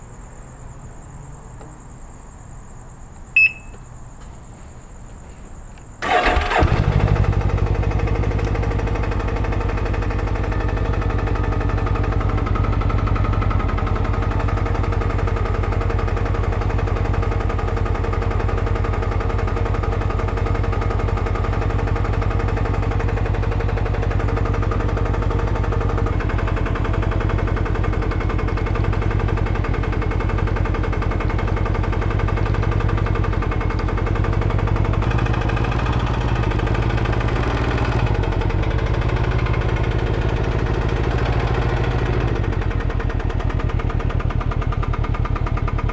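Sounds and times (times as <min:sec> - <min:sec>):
short beep: 0:03.4 - 0:03.8
engine starting and idling with knock: 0:05.8 - 0:45.9.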